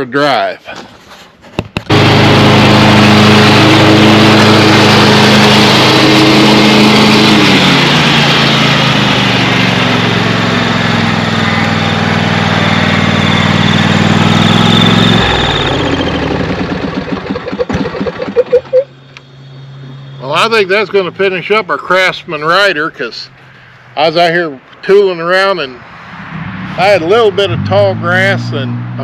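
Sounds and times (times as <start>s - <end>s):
mower engine running: 1.8s - 23.7s.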